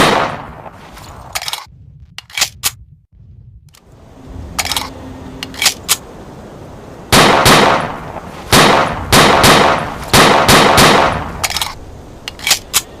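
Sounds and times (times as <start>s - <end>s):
loud echoing gunshots: 0.0s - 0.7s, 7.1s - 11.4s
pistol action clicks: 11.4s - 13.0s.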